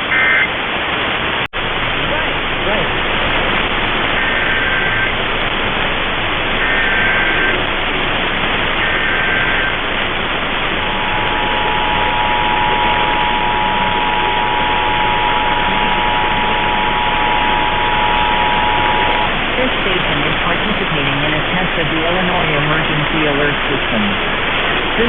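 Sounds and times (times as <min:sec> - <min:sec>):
warbling data bursts: 0:00.0 - 0:00.5, 0:02.1 - 0:25.0
radio static: 0:00.0 - 0:25.0
steady two-tone alert signal: 0:06.6 - 0:07.6, 0:08.8 - 0:09.8, 0:10.4 - 0:23.9.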